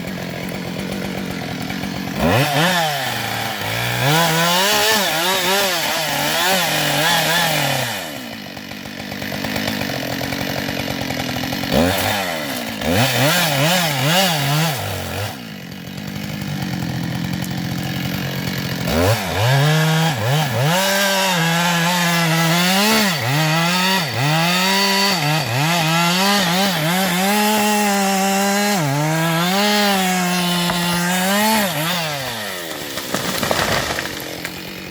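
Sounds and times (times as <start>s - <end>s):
chainsaw revving: 0.0s - 34.9s.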